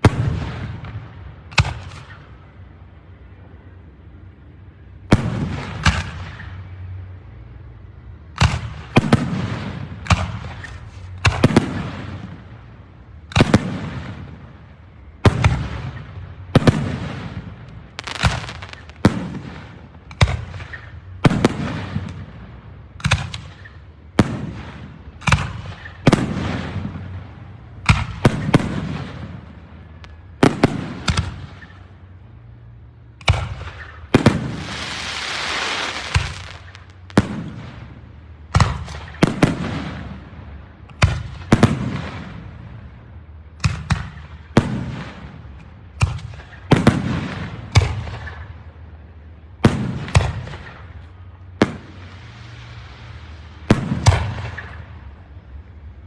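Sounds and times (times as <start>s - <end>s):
fireworks bursting with loud bangs: 8.4s - 32.1s, 33.2s - 43.0s, 43.6s - 48.8s, 49.6s - 55.6s.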